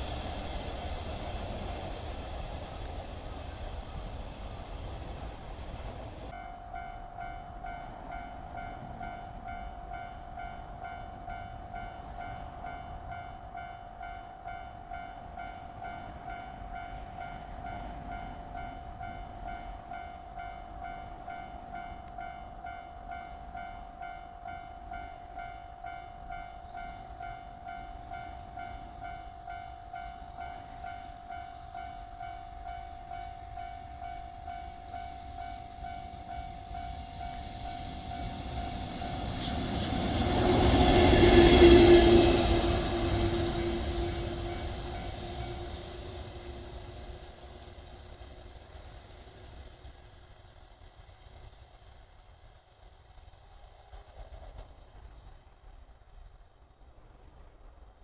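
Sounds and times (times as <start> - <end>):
level crossing warning bell: 6.3 - 41.1.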